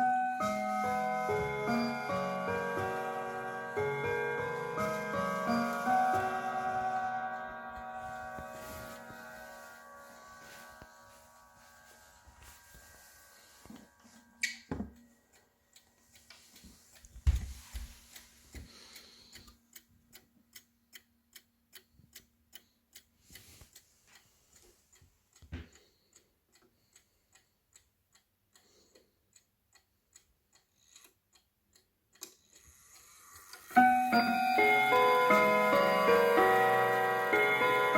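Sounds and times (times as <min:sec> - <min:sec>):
clock ticking: 0:13.7 - 0:37.9.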